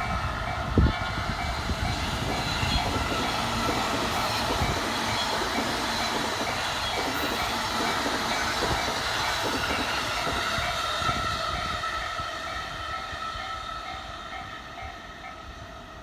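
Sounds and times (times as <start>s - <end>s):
crossing warning alarm ringing: 0.0s - 16.0s
train rumble: 0.0s - 16.0s
train wheels clattering: 0.7s - 11.2s.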